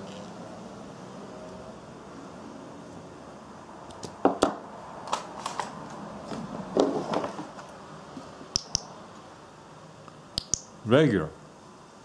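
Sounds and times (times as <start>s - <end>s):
metal flashlight clicks: 8.5s - 8.9s, 10.4s - 10.7s.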